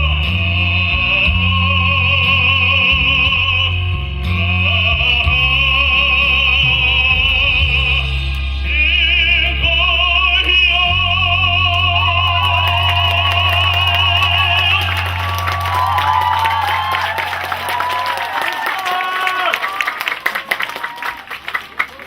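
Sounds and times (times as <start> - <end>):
steady bass accompaniment: 0.0 - 20.0
high melody with wide vibrato: 10.7 - 19.2.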